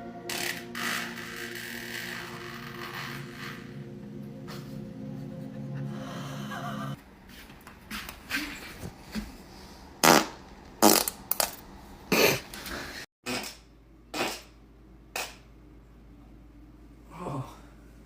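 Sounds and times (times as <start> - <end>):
short farts: 10.0 - 11.1, 13.3 - 14.6, 15.2 - 15.4.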